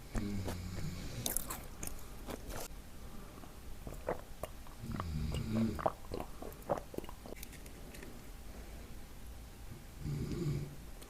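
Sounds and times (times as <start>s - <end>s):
cookie crunching while chewed: 0.0s - 2.7s, 3.8s - 8.2s
man snoring: 4.8s - 5.8s, 10.0s - 10.7s.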